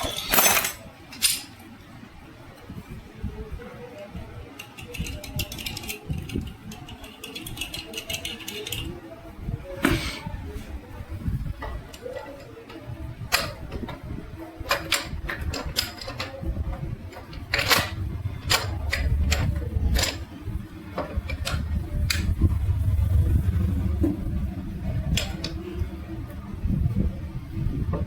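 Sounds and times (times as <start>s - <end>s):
metal parts clinking: 0.0s - 1.6s, 4.6s - 8.9s, 14.6s - 16.4s, 17.1s - 20.3s, 20.9s - 22.3s
low steady rumble: 12.8s - 28.0s.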